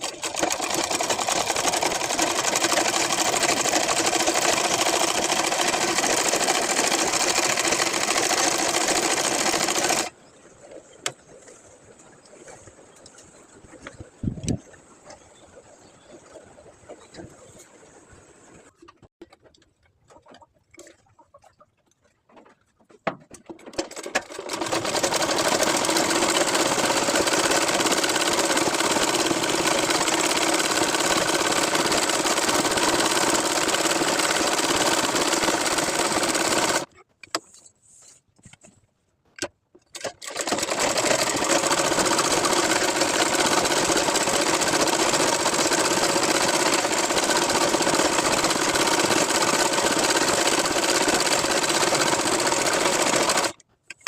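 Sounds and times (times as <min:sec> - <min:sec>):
sewing machine stitching: 0:00.0 - 0:10.1, 0:23.7 - 0:36.9, 0:40.0 - 0:53.6.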